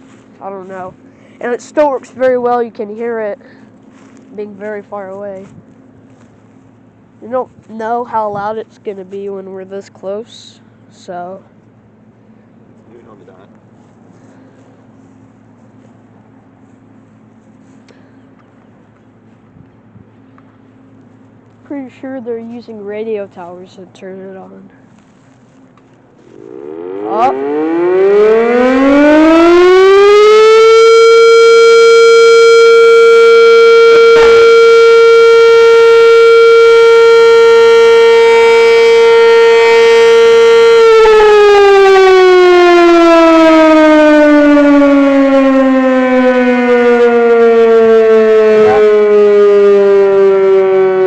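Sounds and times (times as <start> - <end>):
outdoor warning siren: 26.2 - 51.0.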